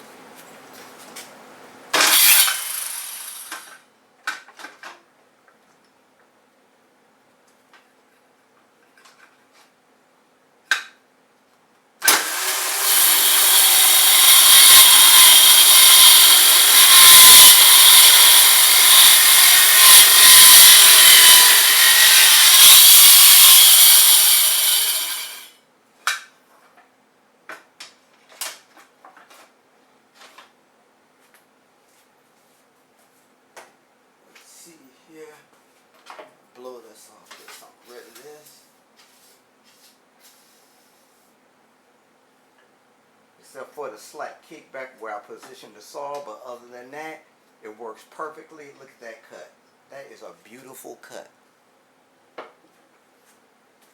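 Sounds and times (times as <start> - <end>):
circular saw cutting plywood: 2.0 - 3.7, 12.0 - 25.5.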